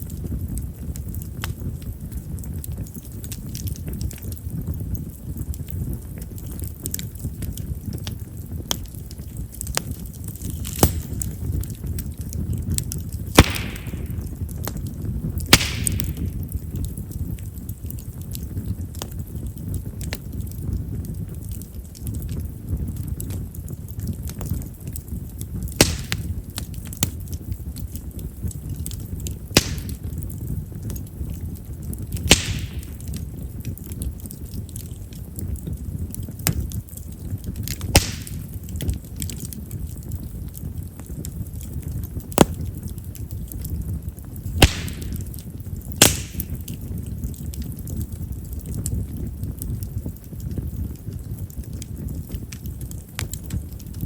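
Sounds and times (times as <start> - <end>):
campfire flame fluttering: 0.0 - 54.0
fire rumbling: 0.0 - 54.0
firewood crackles: 0.0 - 54.0
wood popping: 9.7 - 12.2, 12.8 - 16.7, 25.7 - 27.2, 28.8 - 30.0, 32.2 - 33.2, 37.6 - 39.5, 42.3 - 42.9, 44.4 - 46.8.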